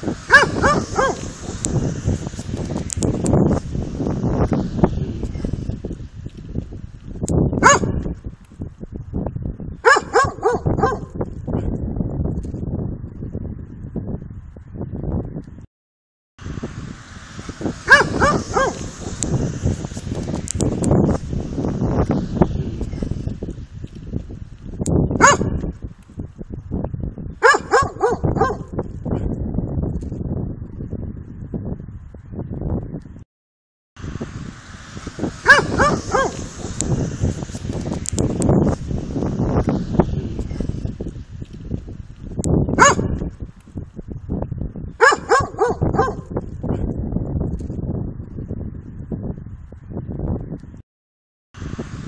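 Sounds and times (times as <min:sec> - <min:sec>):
steady low rumble: 0:00.0 - 0:15.7, 0:16.4 - 0:33.2, 0:34.0 - 0:50.8, 0:51.6 - 0:52.0
dog barking: 0:00.3 - 0:01.3, 0:07.6 - 0:08.0, 0:09.8 - 0:11.1, 0:17.9 - 0:18.8, 0:25.2 - 0:25.6, 0:27.4 - 0:28.7, 0:35.5 - 0:36.4, 0:42.8 - 0:43.2, 0:45.0 - 0:46.3.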